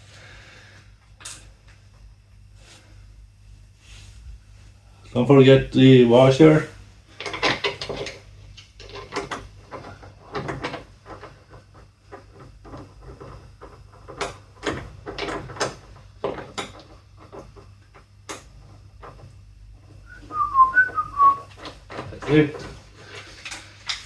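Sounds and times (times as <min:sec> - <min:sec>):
metal clicks and knocks: 0:07.2 - 0:19.4.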